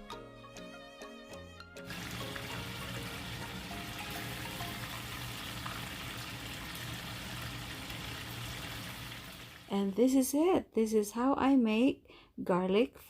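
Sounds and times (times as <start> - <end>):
soft background music: 0.0 - 5.9
chicken frying in hot oil: 1.8 - 9.8.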